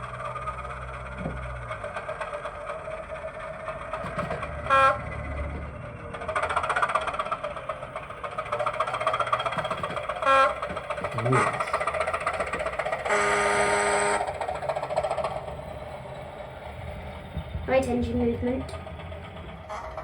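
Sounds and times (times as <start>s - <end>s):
model train diesel engine idling: 0.0s - 20.0s
short loud tone: 13.1s - 14.2s.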